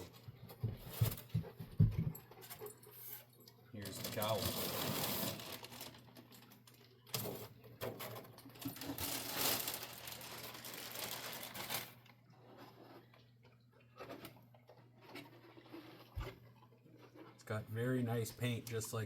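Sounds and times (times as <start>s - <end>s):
packaging rustling and clicking: 3.8s - 12.1s.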